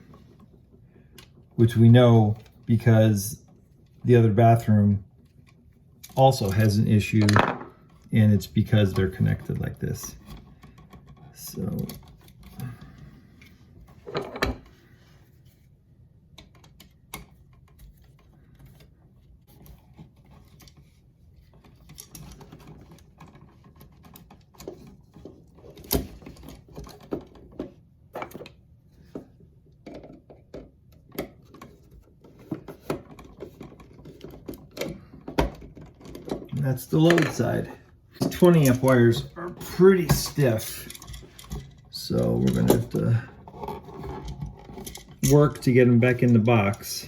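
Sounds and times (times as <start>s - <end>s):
clicks and scrapes of wires: 16.3s - 46.9s.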